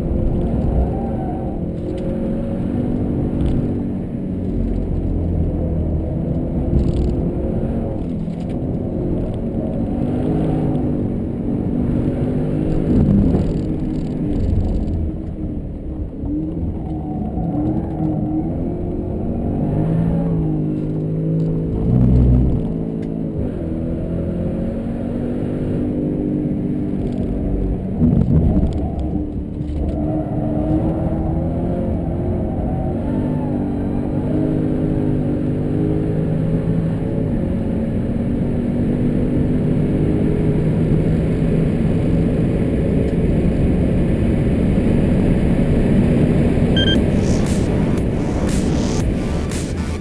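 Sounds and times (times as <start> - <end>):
car engine revving hard: 46.1 - 50.0.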